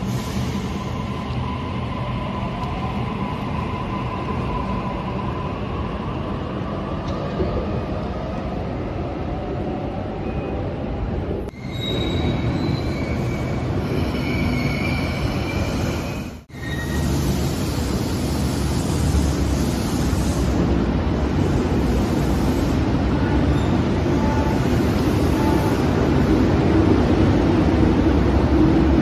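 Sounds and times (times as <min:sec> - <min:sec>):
train wheels squealing: 0:11.5 - 0:17.5, 0:23.5 - 0:24.4
train wheels rumbling on rail: 0:11.5 - 0:29.0.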